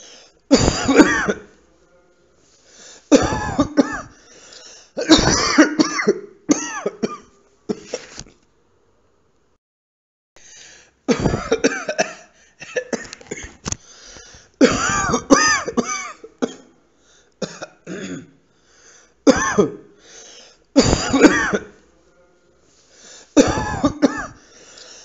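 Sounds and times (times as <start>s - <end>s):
person coughing: 0.0s - 1.5s, 3.1s - 8.1s, 11.1s - 13.6s, 14.6s - 16.8s, 17.4s - 18.4s, 19.3s - 19.9s, 20.8s - 21.8s, 23.4s - 24.4s
throat clearing: 23.4s - 24.4s.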